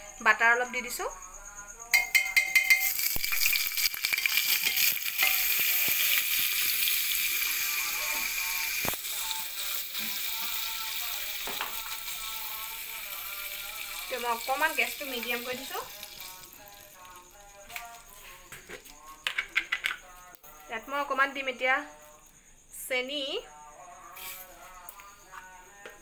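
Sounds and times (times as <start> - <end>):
butter sizzling in hot oil: 2.1 - 17.3.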